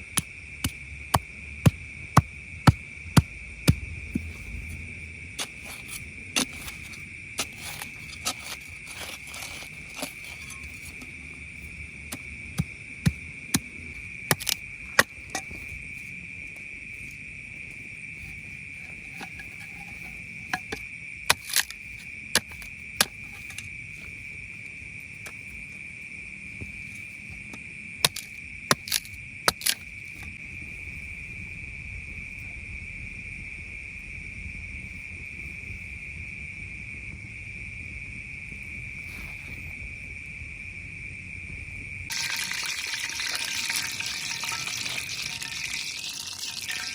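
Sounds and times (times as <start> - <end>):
night insects chorus: 0.0 - 46.9.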